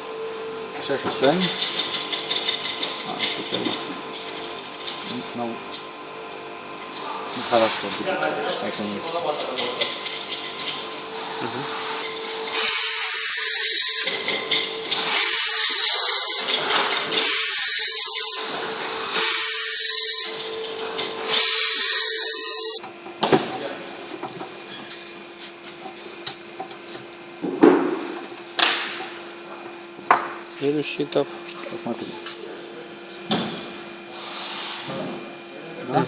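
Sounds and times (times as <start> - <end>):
machine hum: 8.5 - 23.1
power tool grinding metal: 9.5 - 22.8.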